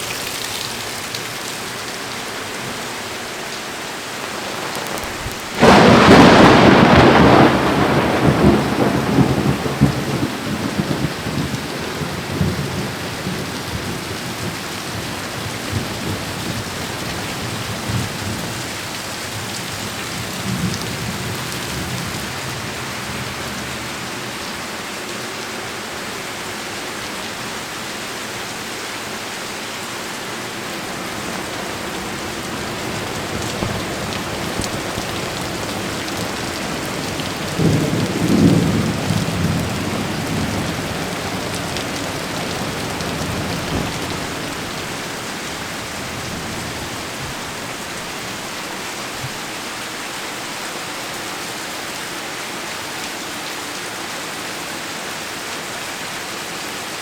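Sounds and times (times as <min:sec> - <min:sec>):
heavy rain: 0:00.0 - 0:57.0
thunder rumbling: 0:04.0 - 0:24.0, 0:30.4 - 0:48.5.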